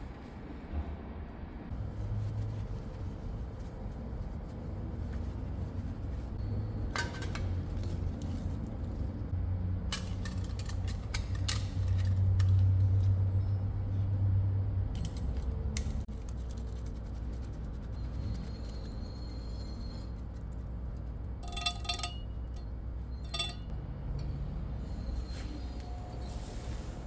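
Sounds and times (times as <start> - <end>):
low mechanical hum: 0.0 - 27.0
metallic clinks and knocks: 21.4 - 23.7.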